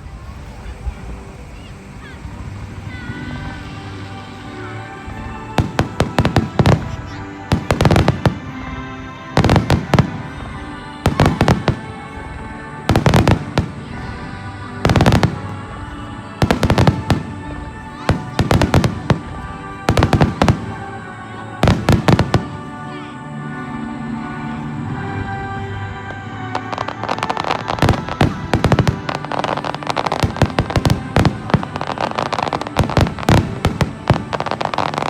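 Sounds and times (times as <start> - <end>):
music with sustained tones: 0.0 - 35.0
firework bangs: 5.0 - 22.9, 26.2 - 35.0.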